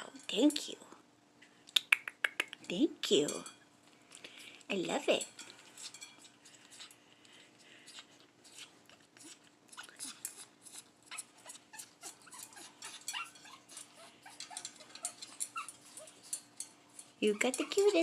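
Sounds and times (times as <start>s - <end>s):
parrot squeaks and clicks: 8.5s - 16.5s.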